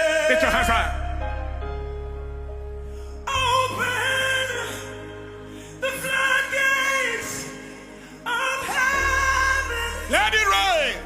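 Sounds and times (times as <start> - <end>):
person singing with vibrato: 0.0 - 1.8, 2.9 - 11.0
low bass notes: 0.0 - 5.2.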